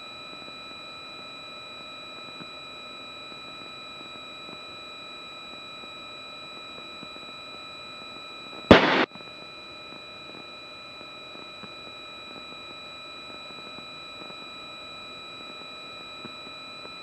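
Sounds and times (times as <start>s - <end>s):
burst of static: 8.7s - 9.1s
headset intercom hiss and hum: 8.7s - 9.1s
sharp click: 8.7s - 9.1s.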